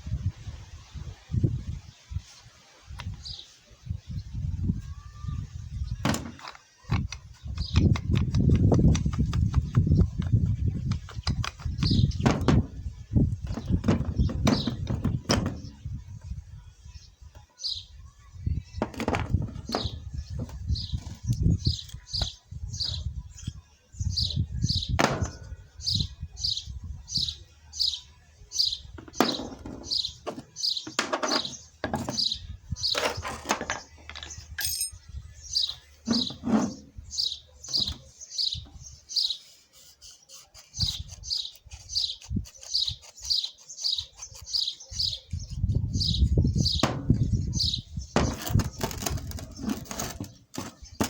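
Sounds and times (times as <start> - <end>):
small bird chirping: 33.8 - 49.7.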